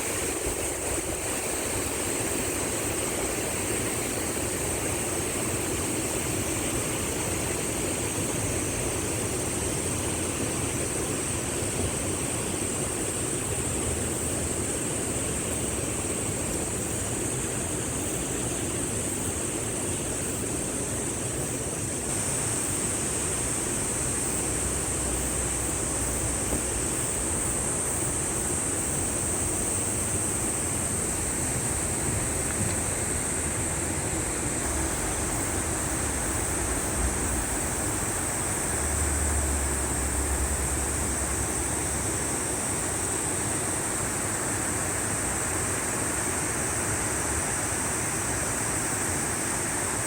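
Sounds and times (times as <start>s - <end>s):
stream rushing: 0.0s - 50.0s.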